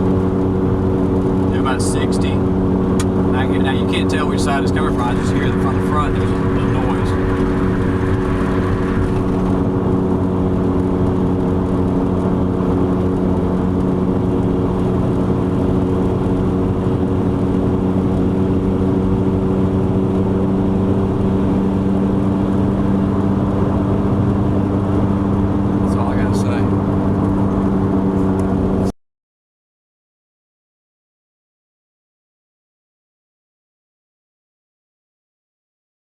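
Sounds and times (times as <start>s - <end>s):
tyre road noise: 0.0s - 28.9s
wheel bearing roar and hum: 0.0s - 28.9s.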